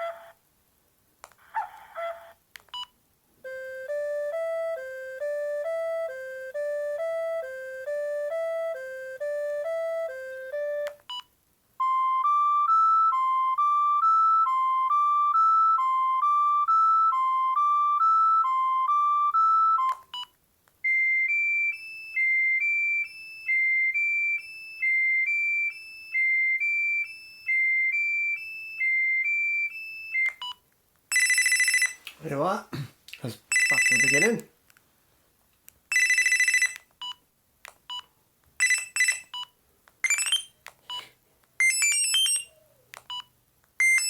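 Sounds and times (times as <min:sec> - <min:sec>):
monophonic phone ringtone: 0:31.1 - 0:32.0, 0:33.5 - 0:34.4, 0:35.9 - 0:36.8, 0:38.6 - 0:39.4, 0:40.0 - 0:40.6, 0:41.6 - 0:43.2, 0:43.8 - 0:44.0
phone key beep: 0:35.9 - 0:37.2, 0:37.9 - 0:41.0, 0:41.6 - 0:44.0.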